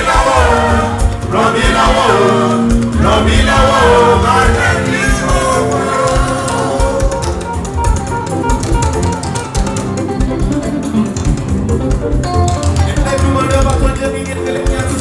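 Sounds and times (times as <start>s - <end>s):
bass line: 0.0s - 14.4s
percussion beat: 0.0s - 15.0s
plucked strings: 0.0s - 15.0s.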